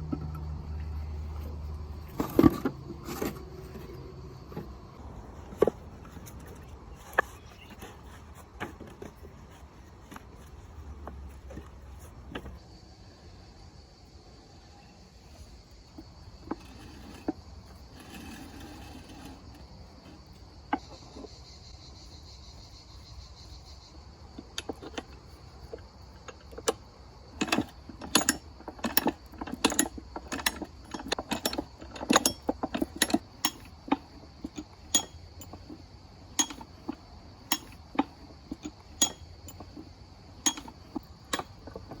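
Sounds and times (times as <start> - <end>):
sharp metallic clinks: 27.4 - 42.0.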